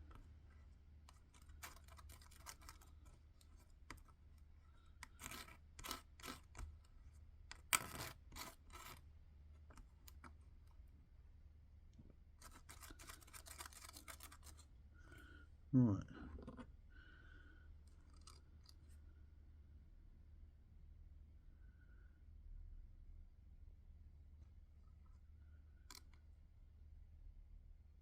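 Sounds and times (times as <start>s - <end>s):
blade scraping stirring epoxy: 1.0s - 4.1s, 4.8s - 6.8s, 7.5s - 9.0s, 12.4s - 14.6s.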